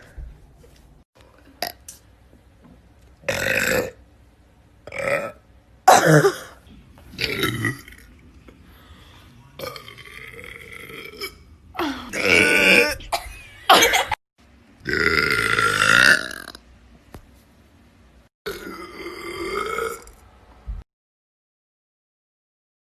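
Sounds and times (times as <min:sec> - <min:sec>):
person burping: 0:03.2 - 0:04.0, 0:04.9 - 0:06.6, 0:07.2 - 0:08.1, 0:09.6 - 0:14.1, 0:14.8 - 0:16.6, 0:18.5 - 0:20.2.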